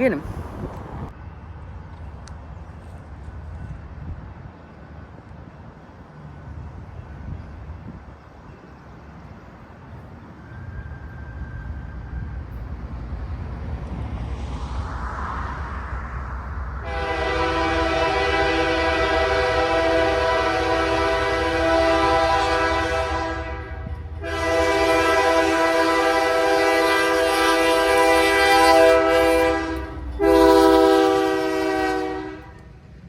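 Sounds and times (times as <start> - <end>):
locomotive engine rumble: 0.0 - 33.0
train air horn blasts: 16.8 - 32.7.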